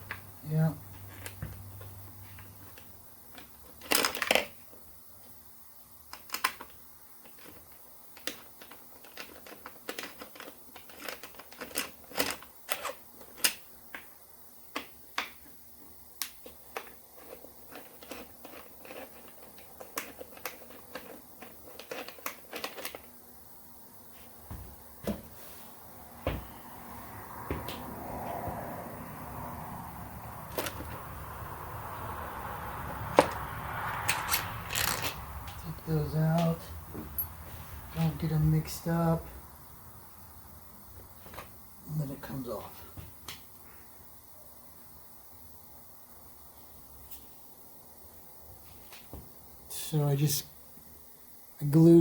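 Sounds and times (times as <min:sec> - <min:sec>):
tools and small parts clicking: 0:06.1 - 0:13.6, 0:16.2 - 0:23.1, 0:33.2 - 0:35.2.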